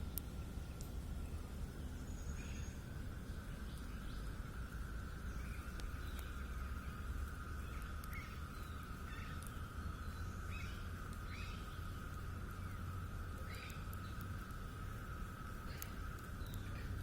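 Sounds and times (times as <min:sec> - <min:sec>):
insect drone: 0:00.0 - 0:17.0
bird chirps: 0:01.2 - 0:02.8, 0:05.0 - 0:12.8, 0:13.4 - 0:14.3.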